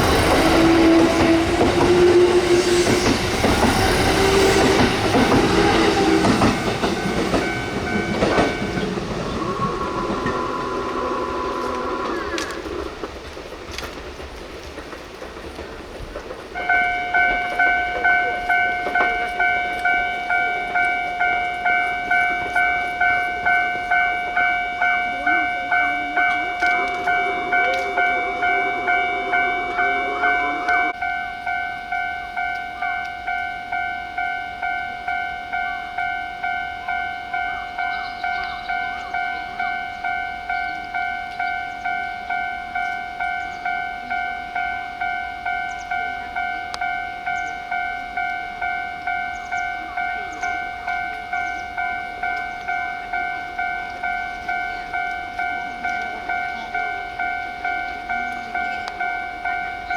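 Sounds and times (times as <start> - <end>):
level-crossing warning bell: 0.0 - 13.1, 16.0 - 59.9
train running noise: 0.0 - 59.9.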